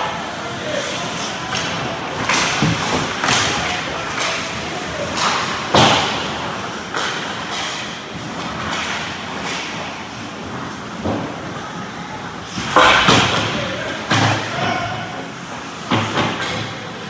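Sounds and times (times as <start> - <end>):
noisy arena background: 0.0 - 17.0
hockey sticks and puck knocking: 0.8 - 9.8, 12.6 - 14.9.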